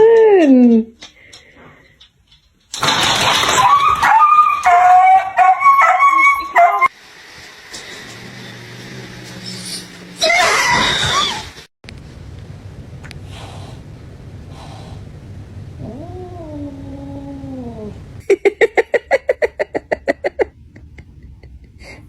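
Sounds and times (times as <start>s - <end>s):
cat yowling: 3.6s - 6.9s, 15.8s - 18.0s.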